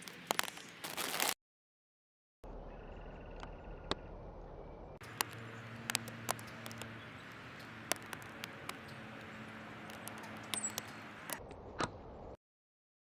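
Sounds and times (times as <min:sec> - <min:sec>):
sharp clicks and taps: 0:05.0 - 0:11.4.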